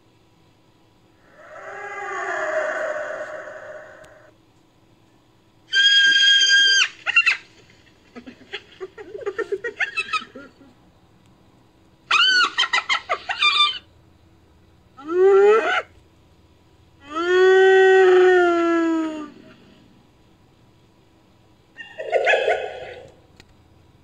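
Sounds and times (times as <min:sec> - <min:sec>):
chicken calling and clucking: 0:21.8 - 0:23.3.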